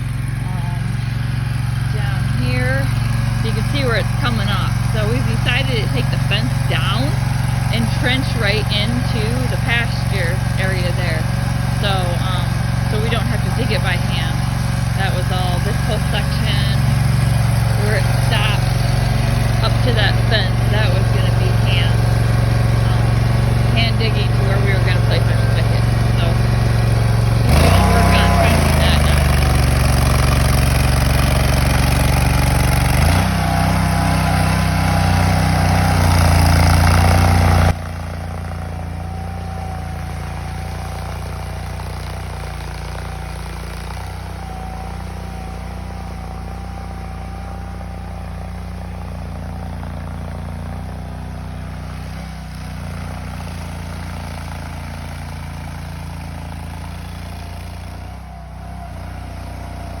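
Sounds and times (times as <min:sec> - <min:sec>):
trencher engine running: 0:00.0 - 1:00.0.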